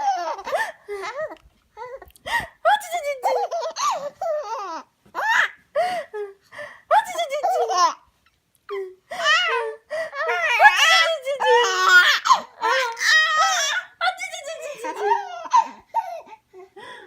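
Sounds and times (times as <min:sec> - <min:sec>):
baby laughing: 0:02.8 - 0:05.6, 0:07.0 - 0:08.0, 0:10.2 - 0:16.4.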